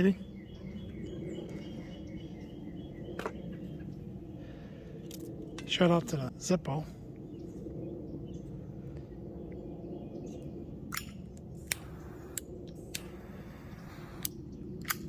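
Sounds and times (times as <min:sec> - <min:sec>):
steady low hum: 0:00.0 - 0:15.0
lighter clicking: 0:11.7 - 0:14.3.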